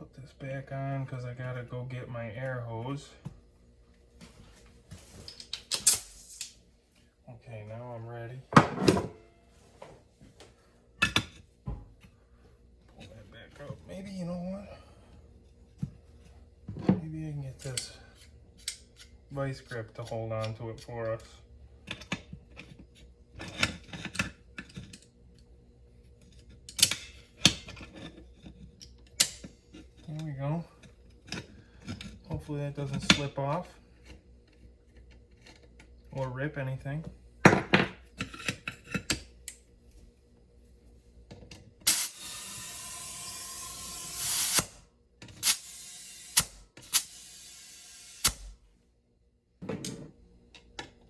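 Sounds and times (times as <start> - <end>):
air chuck click: 41.9 - 44.8, 45.4 - 47.6
compressed air hissing: 41.9 - 44.8, 45.4 - 48.5.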